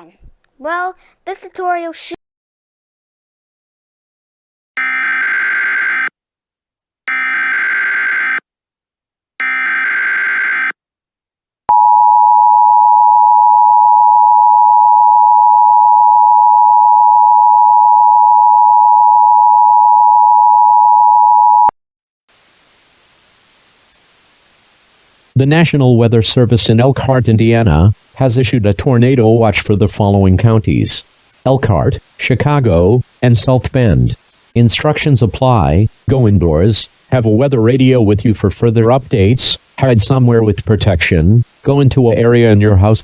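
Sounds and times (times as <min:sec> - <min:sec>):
faint hiss: 0:22.3 - 0:43.0.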